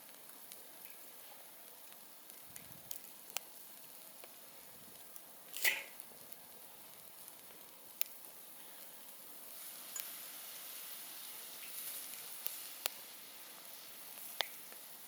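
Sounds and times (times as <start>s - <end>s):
campfire crackling: 0.0s - 15.0s
sharp pops of fire: 1.9s - 8.4s, 9.9s - 10.3s, 11.6s - 13.1s, 13.7s - 14.9s.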